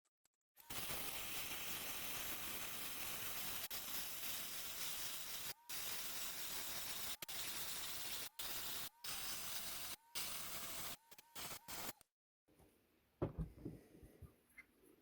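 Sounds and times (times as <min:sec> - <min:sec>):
power grinder grinding metal: 0:00.6 - 0:12.0.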